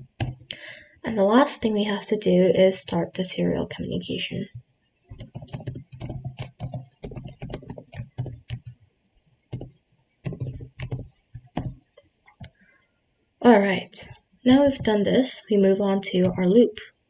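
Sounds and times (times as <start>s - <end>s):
computer keyboard typing: 0.0s - 0.6s, 5.1s - 8.8s, 9.5s - 12.5s, 14.5s - 15.0s, 16.2s - 16.5s.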